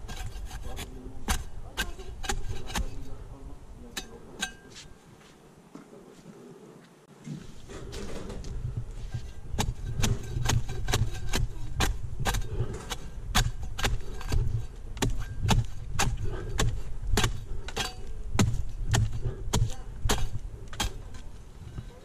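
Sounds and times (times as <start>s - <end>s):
steady low rumble: 7.6s - 22.0s.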